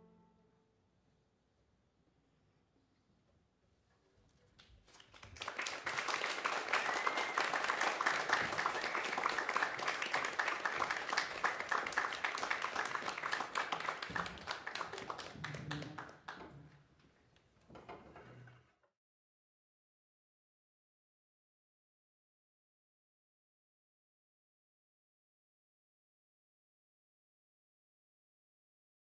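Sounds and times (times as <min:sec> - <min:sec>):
audience applauding: 0:04.6 - 0:16.6.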